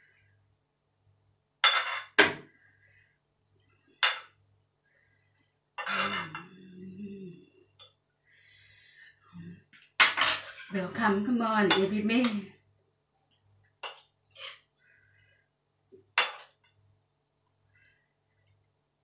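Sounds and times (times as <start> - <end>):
cutlery scraping a plate: 1.6 - 2.2, 5.8 - 6.6, 13.8 - 14.7
person humming: 6.0 - 7.7.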